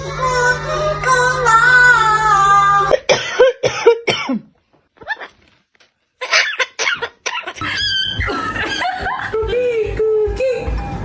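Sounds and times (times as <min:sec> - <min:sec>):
music with singing: 0:00.0 - 0:03.0, 0:08.0 - 0:11.0
parrot making cough-like sounds: 0:06.2 - 0:07.7.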